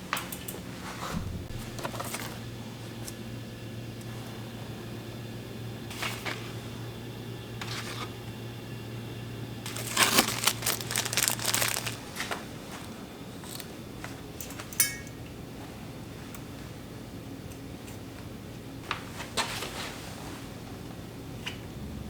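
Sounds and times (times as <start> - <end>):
low steady hum: 1.1 - 7.4, 8.4 - 17.6
crinkling rustling handling noises: 9.6 - 14.7.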